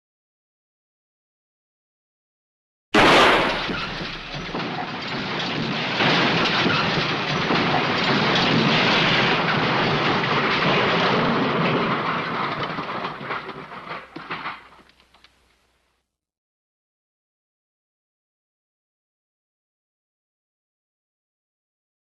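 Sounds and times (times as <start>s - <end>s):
debris clattering: 3.0s - 15.5s.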